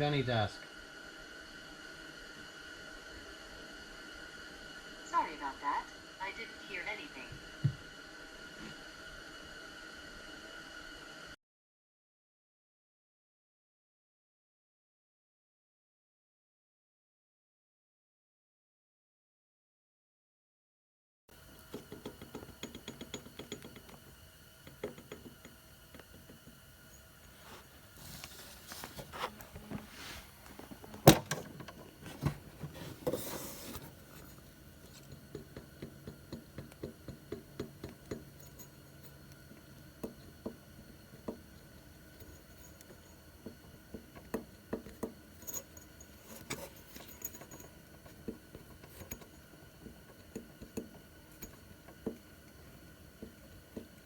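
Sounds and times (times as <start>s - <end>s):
objects clinking and knocking: 21.6s - 29.8s, 30.5s - 52.4s.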